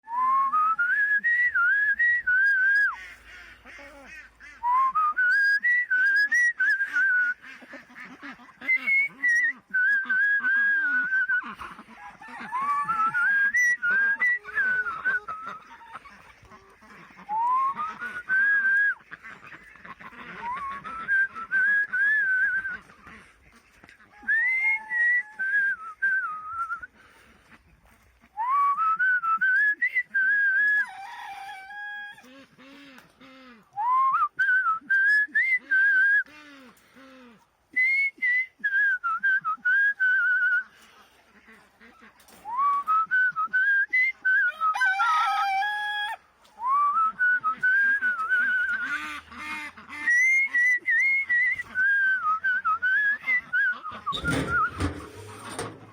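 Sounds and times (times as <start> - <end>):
person whistling a tune: 0.0 - 2.9, 4.6 - 7.4, 8.7 - 11.4, 17.3 - 19.0, 20.4 - 22.7, 24.3 - 26.9, 28.4 - 30.9, 33.8 - 36.3, 37.8 - 40.7, 42.5 - 44.7, 46.6 - 48.8, 50.1 - 55.0.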